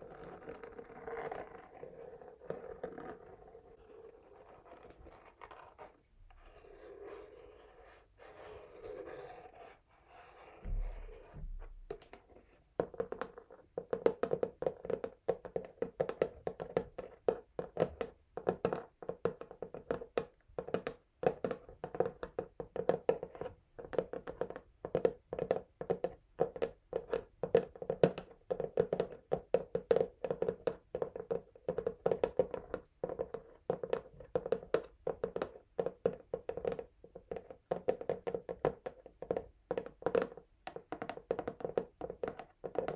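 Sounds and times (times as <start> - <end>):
low thump: 10.6 - 12.0.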